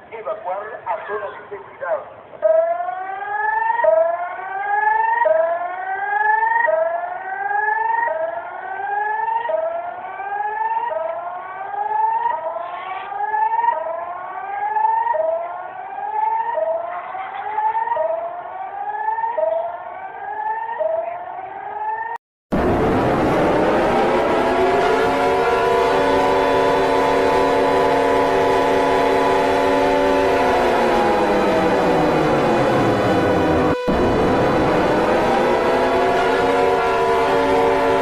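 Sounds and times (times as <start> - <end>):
electronic alert siren whoop: 20.4 - 38.0
noisy sound: 22.5 - 26.2, 30.2 - 38.0.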